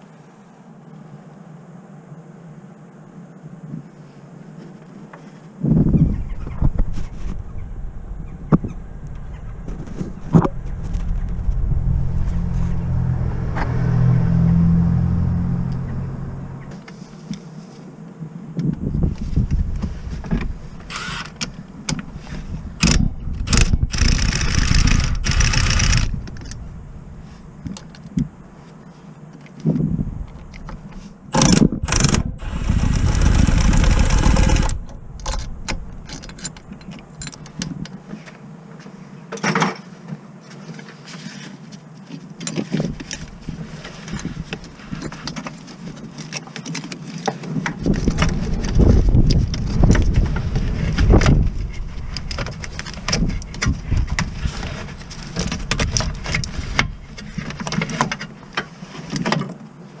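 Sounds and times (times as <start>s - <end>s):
power tool running: 23.5s - 26.1s, 31.4s - 34.9s
tools and metal parts clanking: 33.5s - 38.0s.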